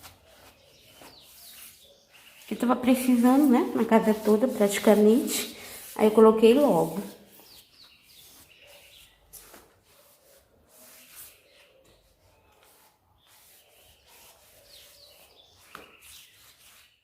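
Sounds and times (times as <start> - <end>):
broom scrubbing wet floor: 0.0 - 17.0
bird chirping faintly: 6.7 - 17.0.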